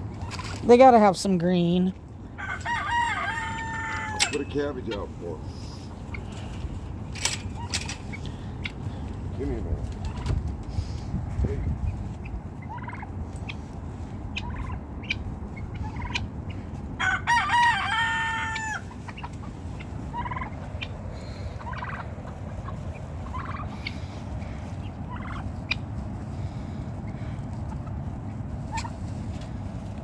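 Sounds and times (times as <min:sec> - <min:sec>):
turkeys and fowl calling: 0:00.0 - 0:00.7, 0:01.9 - 0:30.0
rooster crowing: 0:02.4 - 0:04.4, 0:17.0 - 0:18.9.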